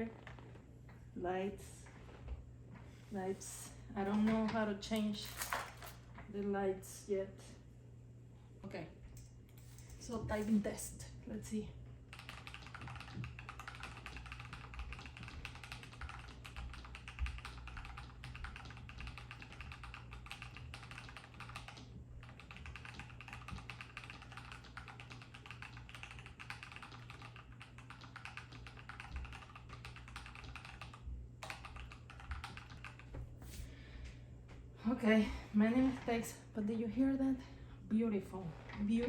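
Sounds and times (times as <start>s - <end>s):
mechanical keyboard typing: 12.1s - 33.1s.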